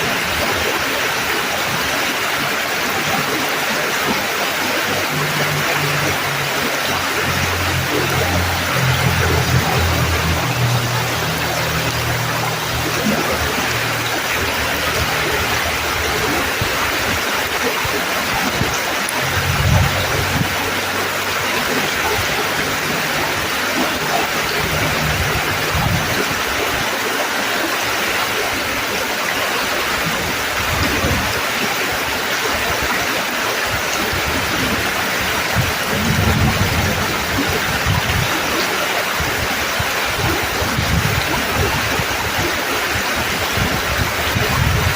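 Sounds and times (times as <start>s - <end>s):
creek water rushing: 0.0s - 44.9s
low rumble: 5.3s - 17.2s.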